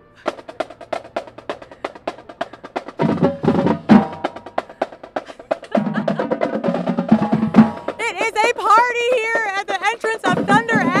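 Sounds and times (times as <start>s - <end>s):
live band playing: 0.0s - 11.0s
rapid drum strokes: 0.2s - 11.0s.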